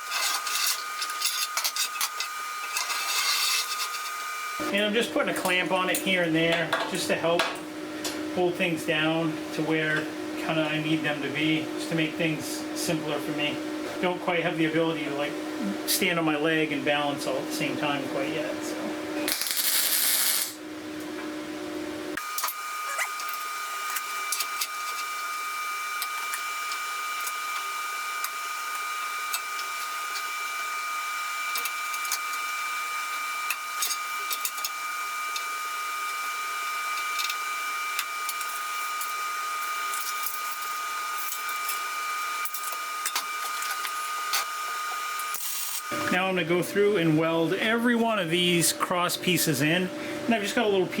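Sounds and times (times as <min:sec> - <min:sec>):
welding arc sizzling hiss: 0:00.0 - 0:04.9, 0:19.2 - 0:20.6, 0:22.2 - 0:46.2.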